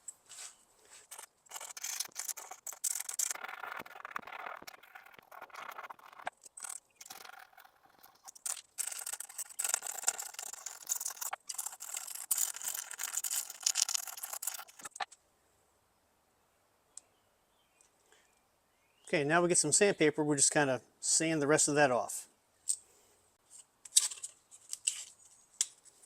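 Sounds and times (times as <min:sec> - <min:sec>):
razor blade scraping paint: 0:00.9 - 0:15.1.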